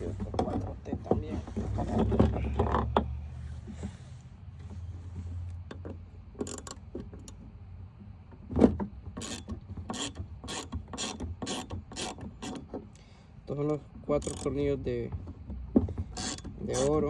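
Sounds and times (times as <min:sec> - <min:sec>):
hand ratchet clicking: 0:06.4 - 0:07.4, 0:09.2 - 0:12.7, 0:14.2 - 0:14.6, 0:16.2 - 0:17.0.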